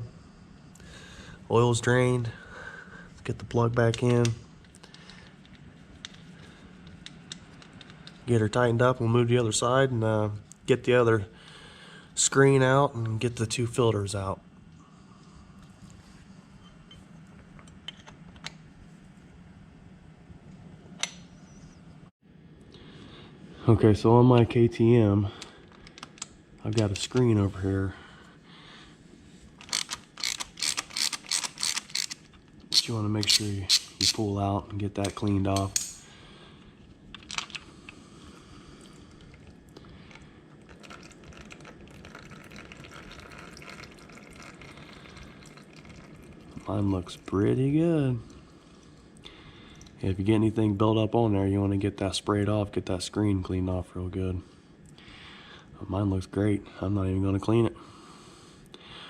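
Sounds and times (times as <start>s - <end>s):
low steady hum: 0.0s - 59.0s
hand tools clicking against metal: 29.6s - 34.2s, 35.0s - 36.1s
oil trickling and dripping: 38.7s - 47.3s.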